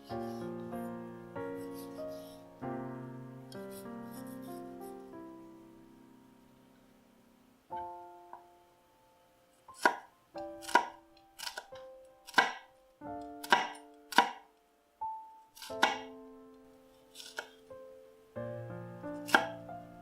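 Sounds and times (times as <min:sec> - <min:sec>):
soft plucked music: 0:00.0 - 0:06.9, 0:07.7 - 0:08.7, 0:09.6 - 0:14.4, 0:15.0 - 0:20.0
knife cutting vegetables: 0:09.7 - 0:12.6, 0:15.6 - 0:16.1, 0:17.1 - 0:17.6.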